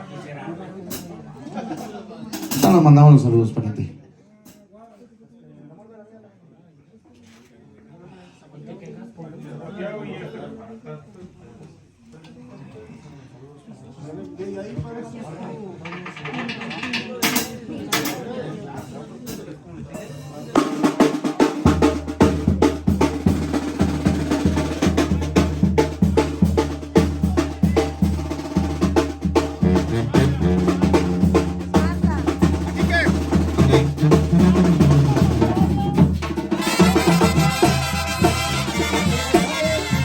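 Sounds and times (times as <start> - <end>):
band playing: 20.0 - 40.0
snare drum rolls: 20.6 - 40.0
bass drum strokes: 21.6 - 40.0
steady bass line: 29.6 - 40.0.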